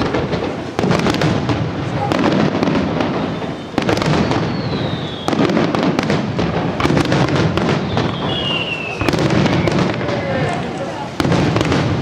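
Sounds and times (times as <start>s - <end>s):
fireworks bangs and crackling: 0.0s - 12.0s
falling firework whistle: 2.0s - 6.2s, 6.8s - 10.4s.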